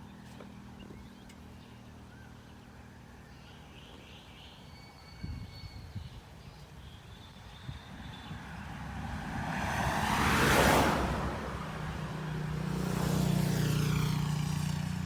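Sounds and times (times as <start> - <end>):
vehicle engine humming: 7.9 - 15.0.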